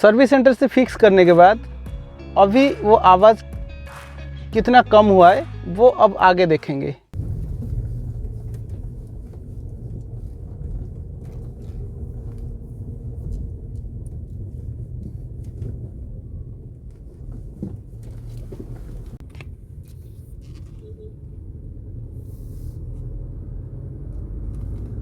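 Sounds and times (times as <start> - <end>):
road and drivetrain rumble: 7.1 - 25.0.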